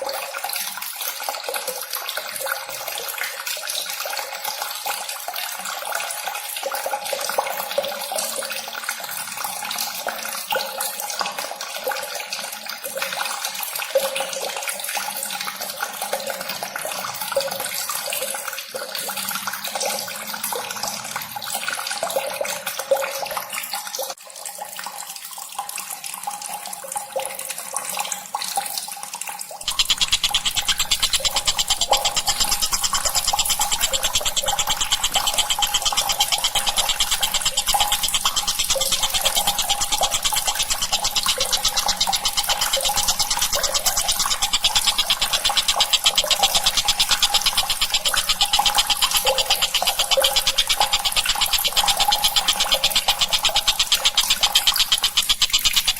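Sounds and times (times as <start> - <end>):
dense bird call chatter: 29.7 - 55.9
fast repeating pattern: 29.7 - 55.9.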